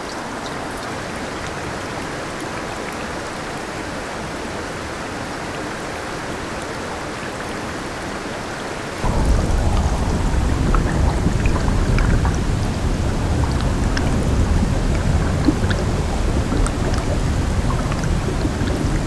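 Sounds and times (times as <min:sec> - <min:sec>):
running water rumble: 0:09.0 - 0:19.0
small pops and crackles: 0:09.0 - 0:19.0.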